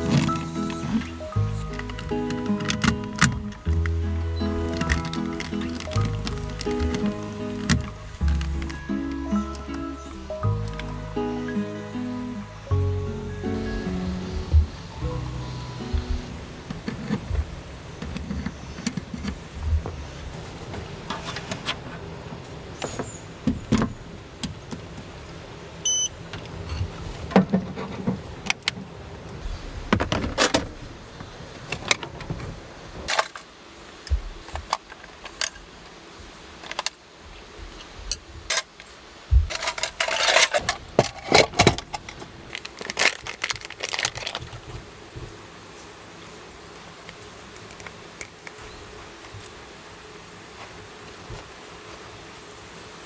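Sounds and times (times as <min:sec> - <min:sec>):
objects being handled: 0:00.0 - 0:12.6.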